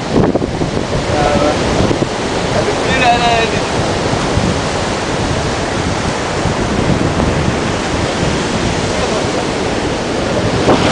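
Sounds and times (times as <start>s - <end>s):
sea and surf rushing: 0.0s - 10.9s
wind buffeting microphone: 0.0s - 10.9s.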